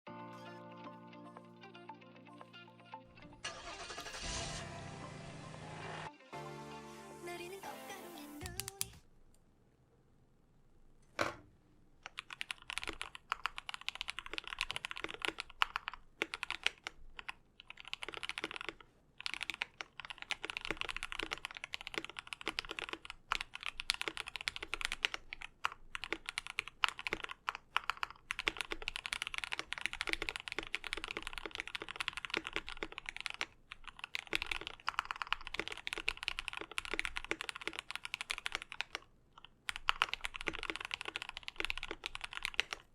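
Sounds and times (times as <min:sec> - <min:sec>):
mechanical keyboard typing: 0:08.4 - 0:09.0, 0:12.0 - 0:42.9.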